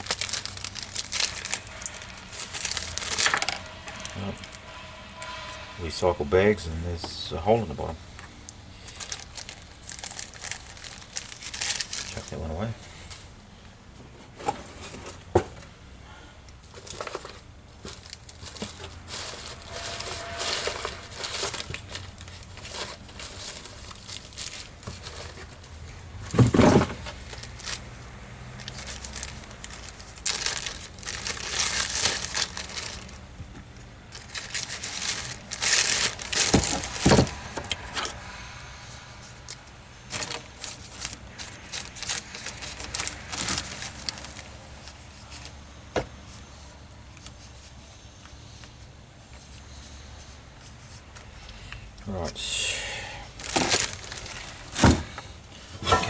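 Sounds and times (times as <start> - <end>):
plastic bags crinkling: 0.0 - 5.4, 8.4 - 13.2, 16.6 - 38.3, 39.3 - 45.6, 53.3 - 56.0
parts knocking when set down: 14.2 - 15.8, 24.4 - 27.9, 34.4 - 38.2, 53.4 - 56.0.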